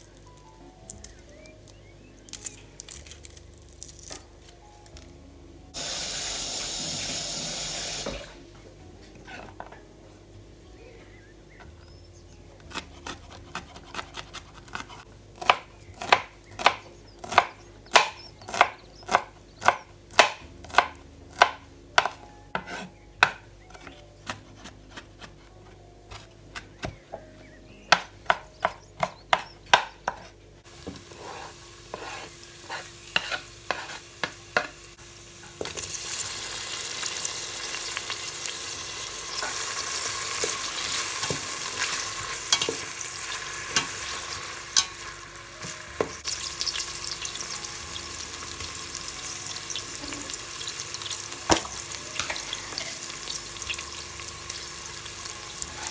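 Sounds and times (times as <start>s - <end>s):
food sizzling in a pan: 5.7s - 8.5s, 30.6s - 55.9s
knife chopping on cutting board: 12.6s - 27.3s, 27.9s - 34.7s.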